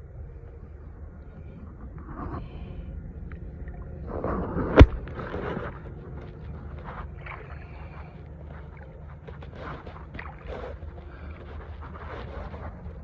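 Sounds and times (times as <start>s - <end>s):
low rumble: 0.0s - 13.0s
water splashing beside boat: 3.2s - 13.0s.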